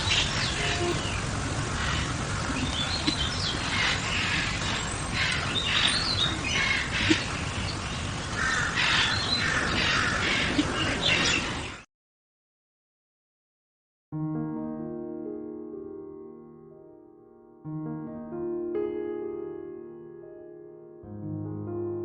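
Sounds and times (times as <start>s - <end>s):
background hiss: 0.0s - 9.1s
harsh crow-like bird calls: 0.0s - 11.8s.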